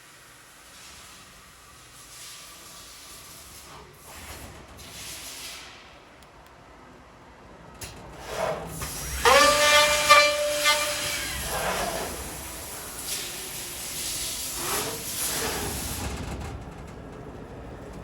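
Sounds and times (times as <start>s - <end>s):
machine air hissing: 0.0s - 6.2s, 8.2s - 16.3s.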